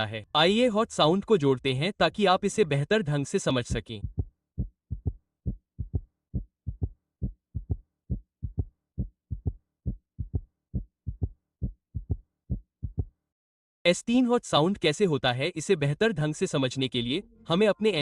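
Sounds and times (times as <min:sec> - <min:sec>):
heart gallop rhythm: 0:03.6 - 0:13.2.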